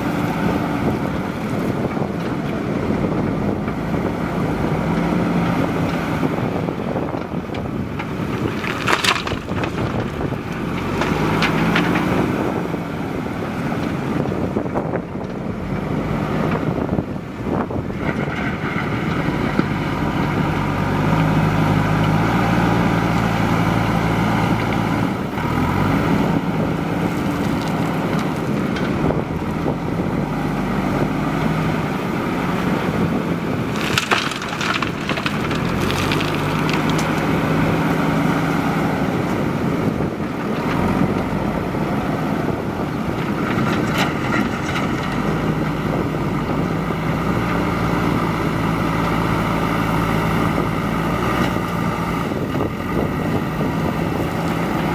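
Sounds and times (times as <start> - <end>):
backhoe diesel engine under load: 0.0 - 54.9
wind buffeting microphone: 0.0 - 54.9
clattering and scraping: 7.0 - 12.4, 33.0 - 37.7, 43.3 - 45.5.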